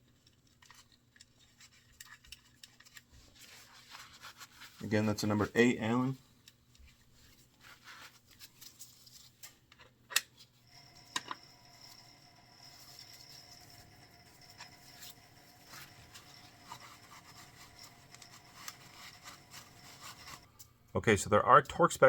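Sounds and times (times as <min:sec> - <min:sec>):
faint steady whine: 0:10.6 - 0:21.2.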